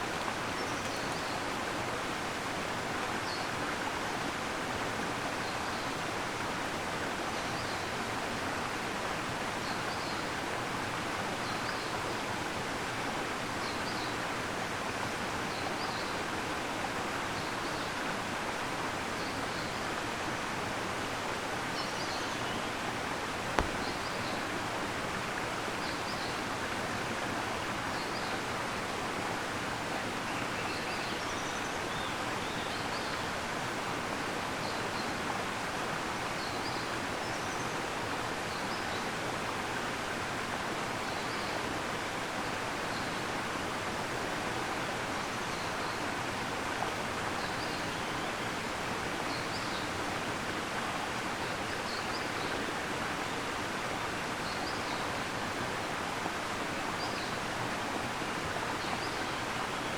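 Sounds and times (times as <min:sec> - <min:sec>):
brief knock: 0:23.6 - 0:23.8.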